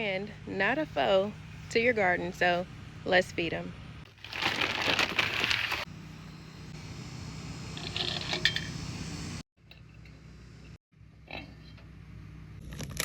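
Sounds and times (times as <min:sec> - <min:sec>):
steady low hum: 0:00.0 - 0:04.2, 0:05.1 - 0:12.7
crinkling handling noise: 0:04.1 - 0:05.9.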